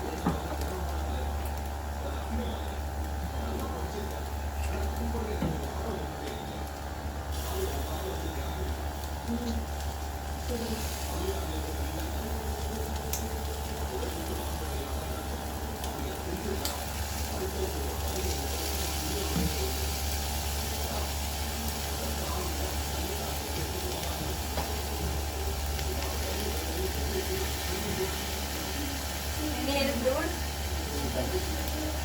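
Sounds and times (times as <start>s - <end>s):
rice sizzling in a pan: 0.0s - 32.0s.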